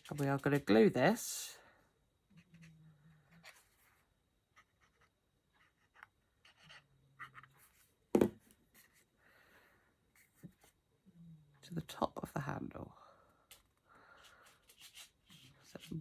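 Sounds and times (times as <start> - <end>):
knock on work surface: 8.2 - 8.4
paper rustling and scratching: 14.2 - 16.0.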